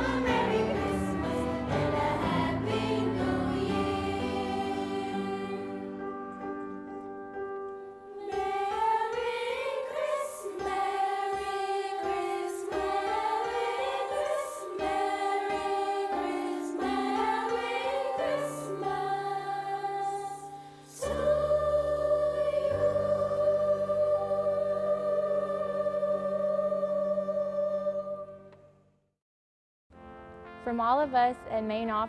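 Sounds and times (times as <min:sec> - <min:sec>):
choir singing with accompaniment: 0:00.0 - 0:06.7, 0:08.1 - 0:28.7
held keyboard chords: 0:00.0 - 0:19.6.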